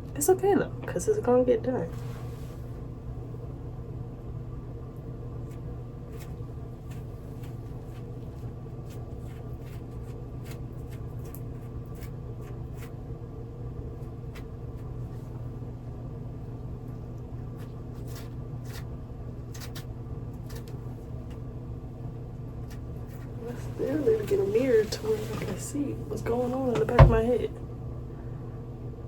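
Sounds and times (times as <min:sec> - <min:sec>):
low electrical hum: 0:00.0 - 0:29.0.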